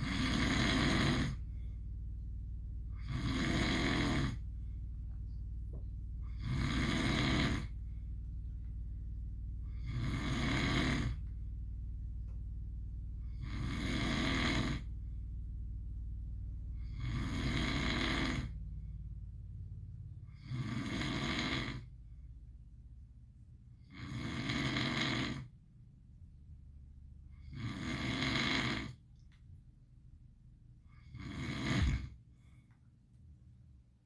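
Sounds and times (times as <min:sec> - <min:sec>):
dog snoring: 0:00.0 - 0:01.7, 0:02.9 - 0:04.5, 0:06.2 - 0:08.0, 0:09.6 - 0:11.3, 0:13.2 - 0:14.9, 0:16.8 - 0:18.9, 0:20.2 - 0:21.9, 0:23.8 - 0:25.5, 0:27.3 - 0:29.0, 0:30.9 - 0:32.2.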